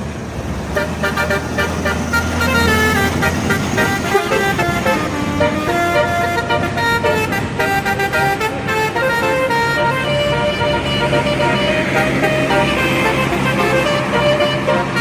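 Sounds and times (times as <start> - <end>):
multi-tone air horn tune: 0.8 - 15.0.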